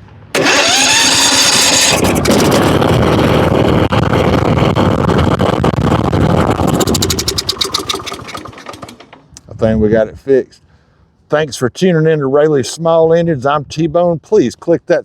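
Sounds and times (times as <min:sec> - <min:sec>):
electric starter whining: 0:00.3 - 0:09.4
lawn mower engine running: 0:00.3 - 0:09.4.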